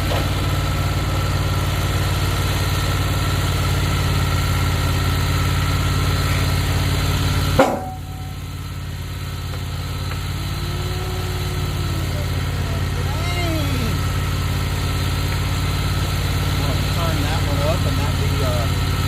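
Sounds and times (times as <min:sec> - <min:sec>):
sawmill engine humming: 0:00.0 - 0:19.0
sharp clack: 0:07.6 - 0:08.4.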